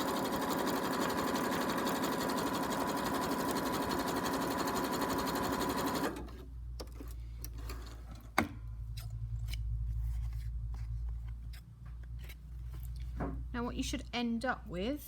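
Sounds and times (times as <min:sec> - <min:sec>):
sewing machine stitching: 0:00.0 - 0:06.4.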